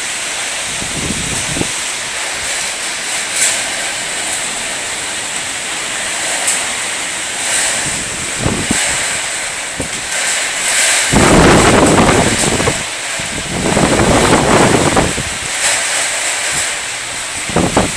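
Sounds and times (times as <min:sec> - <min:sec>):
wind buffeting microphone: 0:00.0 - 0:17.9
strong wind rushing: 0:00.6 - 0:03.1, 0:07.4 - 0:15.7, 0:16.4 - 0:17.9.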